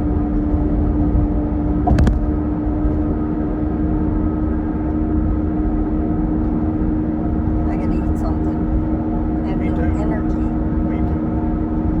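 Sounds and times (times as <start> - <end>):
car engine hum: 0.0 - 12.0
road noise in car cabin: 0.0 - 12.0
short knock: 1.8 - 2.3.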